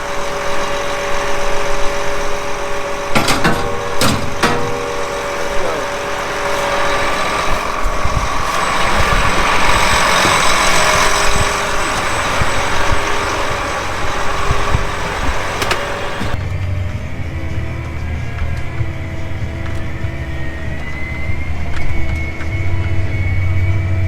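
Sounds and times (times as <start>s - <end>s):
rushing noise: 0.0s - 16.5s
heavy machinery engine running: 0.0s - 24.0s.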